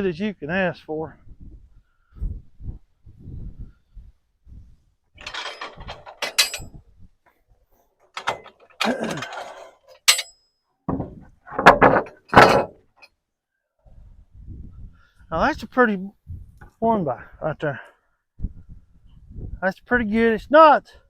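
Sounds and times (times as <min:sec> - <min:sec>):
clinks: 0:05.2 - 0:06.8, 0:08.1 - 0:13.2
wooden boards knocking: 0:10.9 - 0:12.8
wooden boards scraping: 0:10.9 - 0:12.8.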